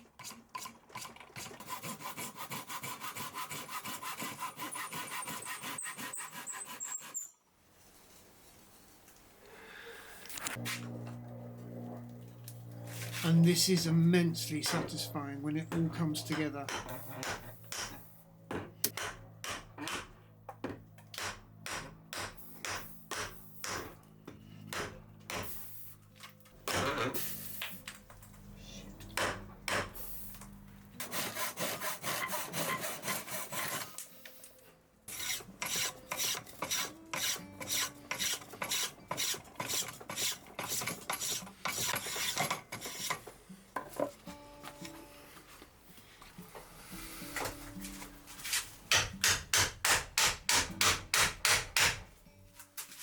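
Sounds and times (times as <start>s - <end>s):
rasp scraping wood: 0.2s - 7.3s, 31.0s - 34.0s, 35.1s - 43.4s.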